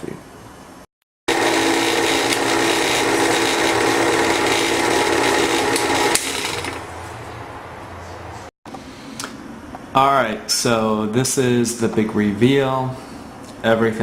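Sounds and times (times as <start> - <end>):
electric motor whirring: 1.3 - 6.8.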